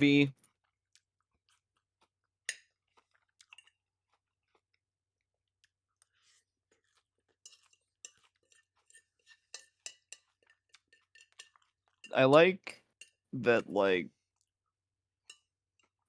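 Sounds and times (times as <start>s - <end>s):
chewing crunchy food: 0.4s - 12.1s, 14.2s - 14.8s.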